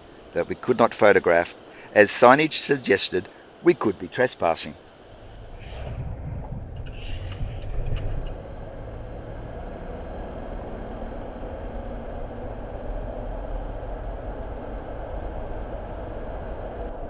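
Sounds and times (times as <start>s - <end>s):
car engine running: 5.1s - 16.9s
sharp clicks and knocks: 5.8s - 8.4s.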